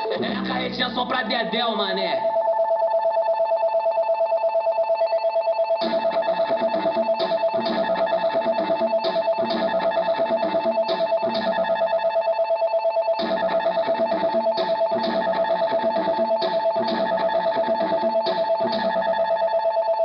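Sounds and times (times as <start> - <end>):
dance beat: 0.0 - 2.0, 5.8 - 12.1, 13.2 - 19.4
pulsing two-tone synth line: 0.0 - 20.0
plucked guitar-like notes: 5.8 - 11.8, 13.2 - 19.0.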